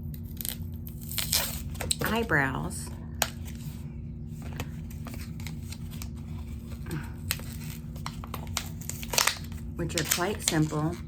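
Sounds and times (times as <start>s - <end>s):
steady low hum: 0.0s - 11.0s
small items clicking and rustling: 6.7s - 11.0s.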